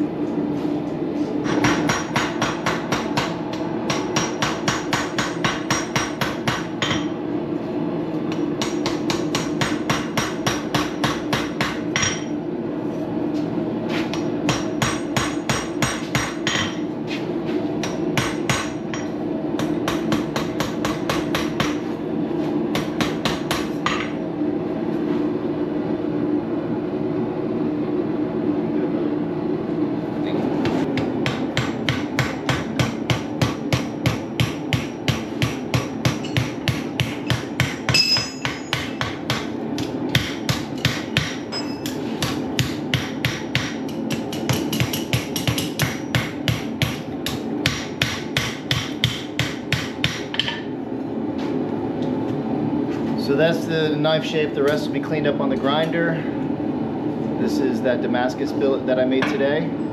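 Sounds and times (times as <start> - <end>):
steady hum: 0.0 - 59.9
hammer striking anvil: 1.5 - 7.1, 8.3 - 12.3, 14.5 - 16.8, 31.0 - 50.7.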